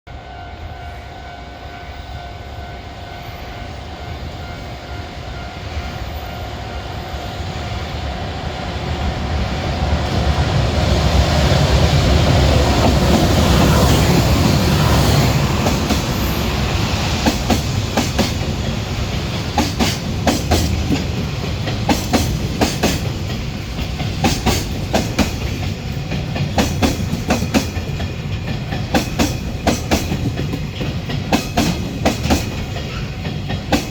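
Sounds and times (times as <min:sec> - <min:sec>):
freight train rumble: 0:00.0 - 0:33.9
wheels clicking over rail joints: 0:17.2 - 0:33.9.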